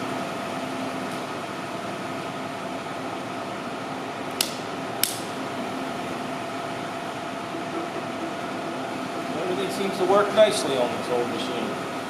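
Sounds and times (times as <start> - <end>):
lathe humming: 5.4 - 12.0.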